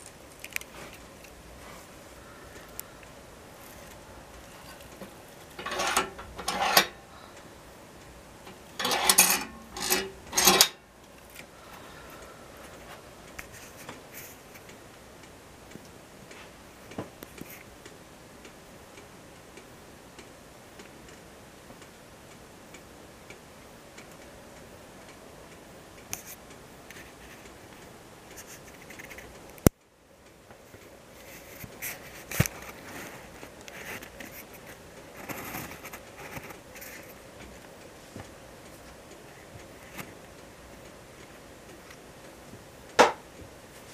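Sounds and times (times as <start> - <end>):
wood fire hissing and crackling: 0.0 - 43.9
scraping strokes: 3.6 - 7.0, 8.5 - 10.8.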